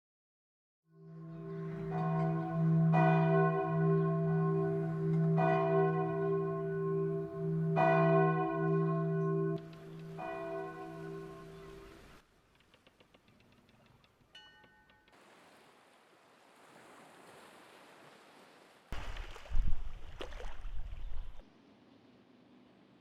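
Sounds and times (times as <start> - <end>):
large bell tolling: 1.0 - 11.9.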